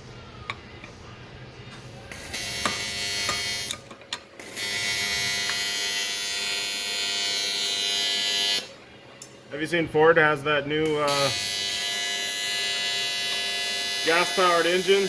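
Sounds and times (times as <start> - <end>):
arc welder buzzing: 2.0 - 9.8, 10.7 - 15.0.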